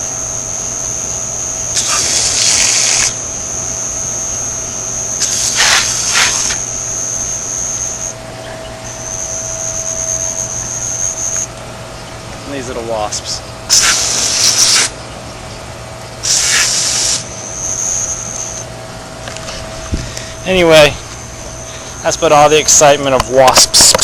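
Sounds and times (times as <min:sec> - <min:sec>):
high-pitched whine: 0:00.0 - 0:24.0
aerosol spray hissing: 0:05.2 - 0:06.6, 0:13.7 - 0:14.9, 0:16.2 - 0:17.3.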